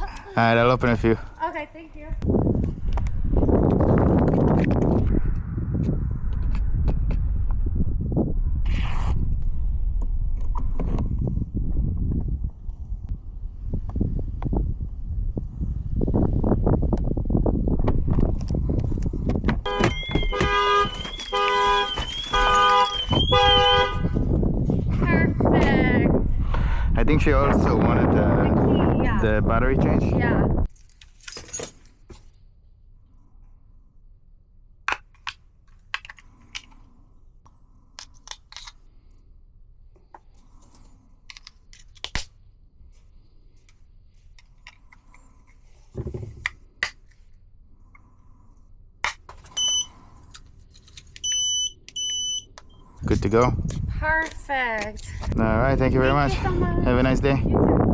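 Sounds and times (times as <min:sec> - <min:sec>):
car horn pulses: 0:19.6 - 0:24.3
high warbling alarm siren: 0:19.7 - 0:23.9.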